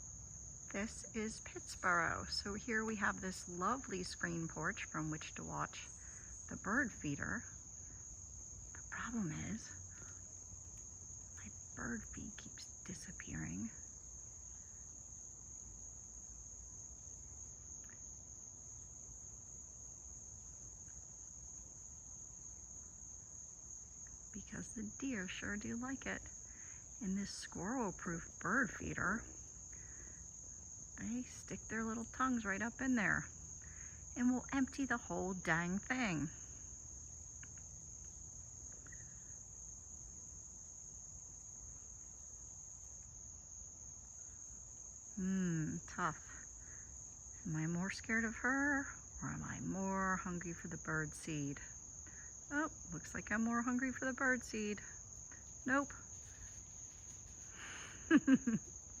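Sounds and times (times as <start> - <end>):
crickets trilling: 0.0 - 59.0
faint insect chirp: 0.0 - 59.0
insects droning: 0.0 - 59.0
faint small ticks: 17.8 - 18.2, 37.3 - 39.4.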